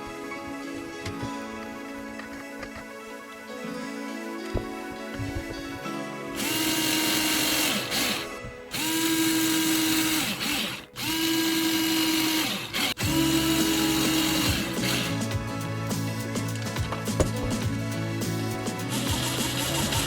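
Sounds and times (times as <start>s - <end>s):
background music: 0.0s - 20.0s
small electric motor whining: 6.4s - 15.2s.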